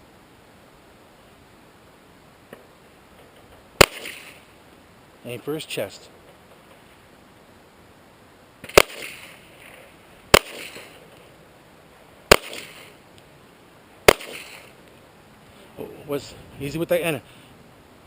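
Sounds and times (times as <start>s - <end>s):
pistol shots with echo: 3.8s - 4.4s, 8.6s - 9.4s, 10.3s - 11.0s, 12.3s - 13.0s, 14.0s - 14.7s.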